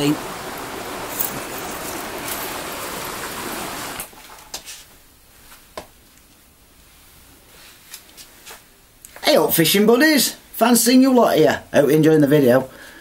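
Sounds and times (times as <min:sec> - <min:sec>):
river water rushing: 0:00.0 - 0:04.2.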